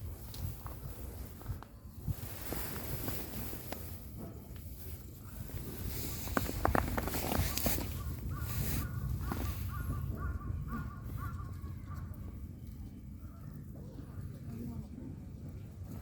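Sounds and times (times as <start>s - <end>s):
bird calling: 7.3s - 12.1s.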